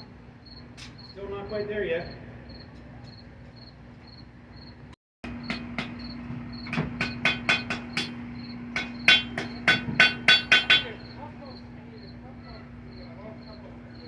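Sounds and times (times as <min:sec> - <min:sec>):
hammer striking iron on anvil: 0:05.2 - 0:11.1.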